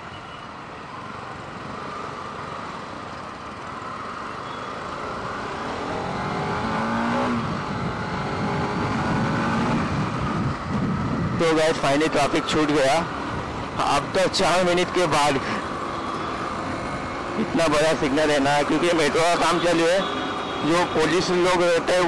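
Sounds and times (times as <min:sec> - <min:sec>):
road and traffic noise: 0:00.0 - 0:22.0
motorcycle engine accelerating: 0:05.4 - 0:11.4.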